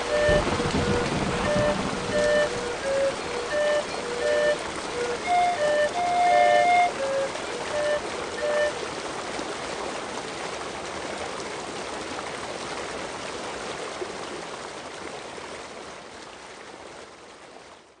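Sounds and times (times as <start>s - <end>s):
flute notes: 0.0s - 8.9s
stream flowing: 0.0s - 18.0s.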